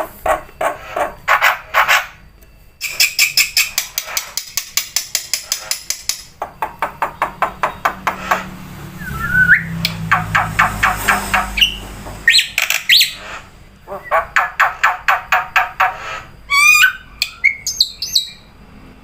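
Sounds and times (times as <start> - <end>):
myna whistle sliding up: 9.0 - 9.7.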